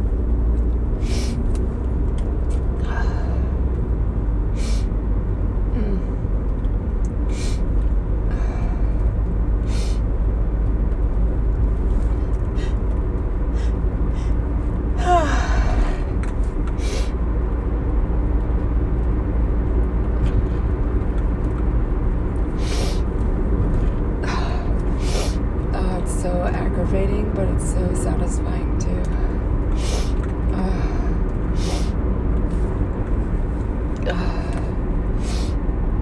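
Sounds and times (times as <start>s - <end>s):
steady low rumble: 0.0s - 36.0s
person sniffing: 16.8s - 17.2s, 22.6s - 23.0s, 25.0s - 25.4s, 29.8s - 30.2s, 31.6s - 32.0s, 35.2s - 35.6s
voiced gasp: 29.8s - 32.0s.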